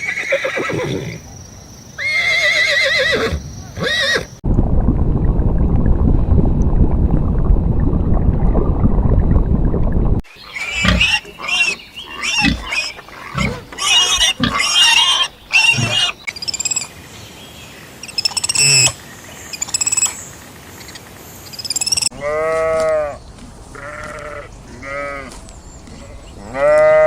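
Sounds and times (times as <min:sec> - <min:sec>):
high-pitched animal calls: 0:10.4 - 0:16.9, 0:18.0 - 0:20.2, 0:20.8 - 0:23.0
loud animal calls: 0:10.4 - 0:16.9
wavering bleat: 0:22.2 - 0:25.4, 0:26.0 - 0:27.0.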